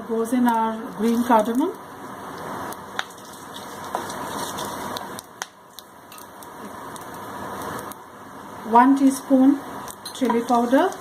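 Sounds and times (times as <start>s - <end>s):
spices sizzling in hot oil: 0.0s - 11.0s
oil popping and crackling: 0.4s - 8.0s, 9.8s - 11.0s.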